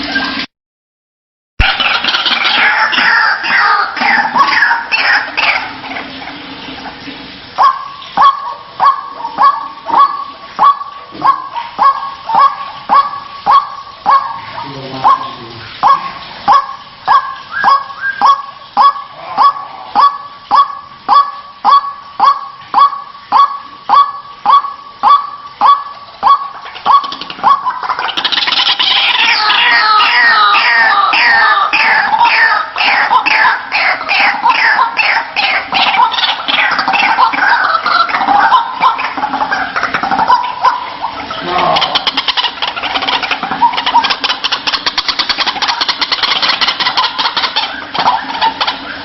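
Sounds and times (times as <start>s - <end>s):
bird honking call: 7.6s - 49.0s.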